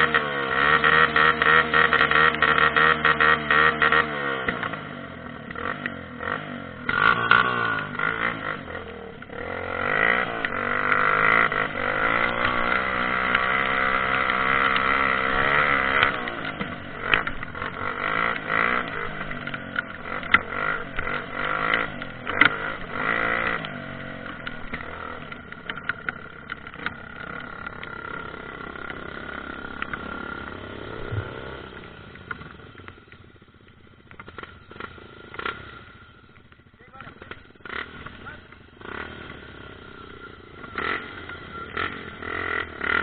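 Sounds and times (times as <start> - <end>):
motorcycle engine revving: 0.0 - 43.0
sharp knocks and clatter: 12.1 - 30.1.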